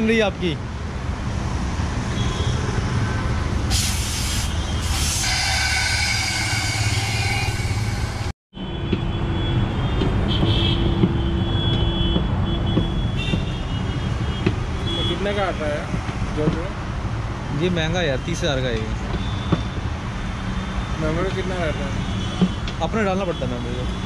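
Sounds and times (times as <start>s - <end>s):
hissing: 3.7s - 8.4s
steady whine: 4.9s - 8.4s.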